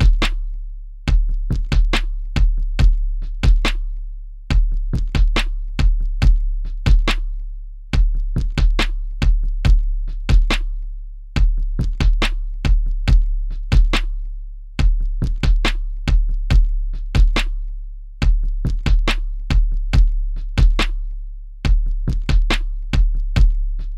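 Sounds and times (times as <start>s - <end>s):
deep bass kicks: 0.0s - 0.4s, 1.1s - 3.8s, 4.5s - 7.3s, 7.9s - 10.7s, 11.4s - 14.2s, 14.8s - 17.6s, 18.2s - 23.9s
sharp clicky drum hits: 0.0s - 0.4s, 18.2s - 21.0s.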